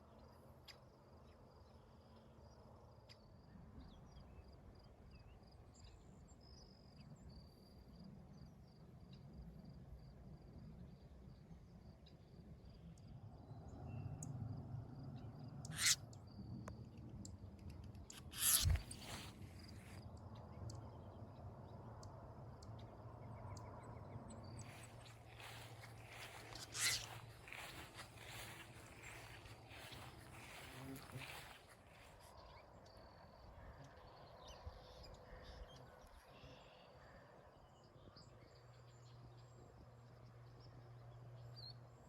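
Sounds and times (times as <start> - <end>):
crickets trilling: 15.6 - 16.4, 18.1 - 19.8, 24.5 - 34.3.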